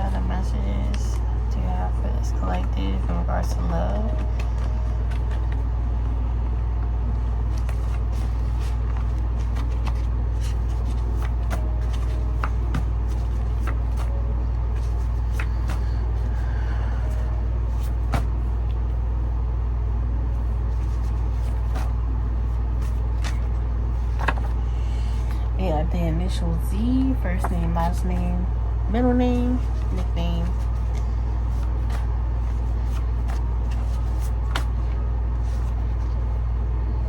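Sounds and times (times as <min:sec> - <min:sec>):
low hum: 0:00.0 - 0:37.0
cards being shuffled: 0:02.2 - 0:06.2, 0:07.1 - 0:16.4, 0:17.0 - 0:18.9, 0:20.4 - 0:25.5, 0:29.4 - 0:36.4.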